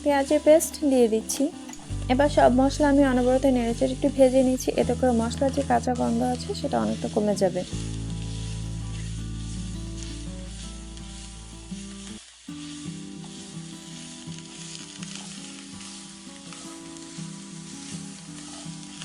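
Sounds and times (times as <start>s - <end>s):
background music: 0.0s - 12.1s
paste sizzling in hot oil: 0.0s - 19.0s.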